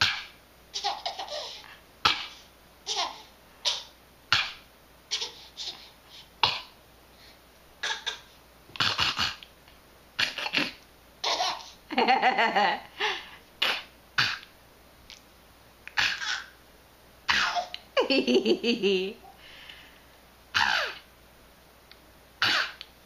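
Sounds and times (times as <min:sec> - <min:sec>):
parrot mimicking coughs: 0:00.0 - 0:00.4, 0:03.7 - 0:05.3, 0:06.4 - 0:06.8, 0:07.8 - 0:09.4, 0:10.2 - 0:10.8, 0:13.6 - 0:14.5, 0:15.9 - 0:16.5, 0:17.3 - 0:17.7, 0:20.5 - 0:21.0, 0:22.4 - 0:22.8.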